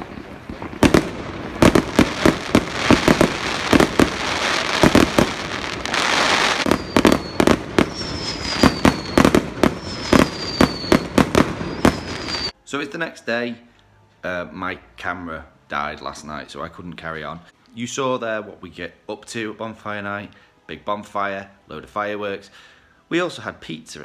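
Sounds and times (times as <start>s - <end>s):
firework bangs: 0.0s - 12.5s
firework crackling: 0.0s - 12.6s
firework whistles: 0.0s - 12.6s.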